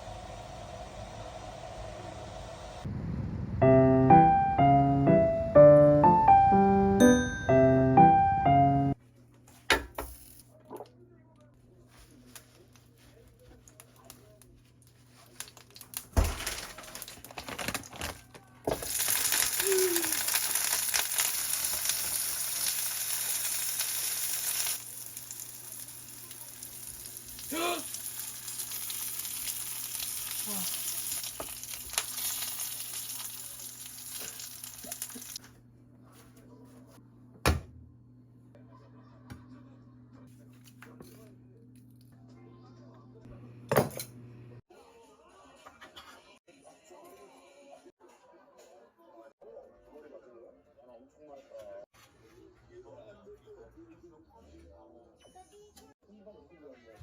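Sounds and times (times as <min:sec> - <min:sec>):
food sizzling in a frying pan: 0:18.7 - 0:35.4.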